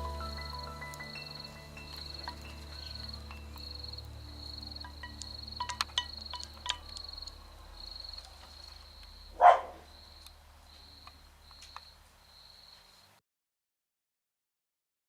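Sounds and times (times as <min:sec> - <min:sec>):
low hum: 0:00.0 - 0:11.5
insect chirping trills: 0:00.0 - 0:13.1.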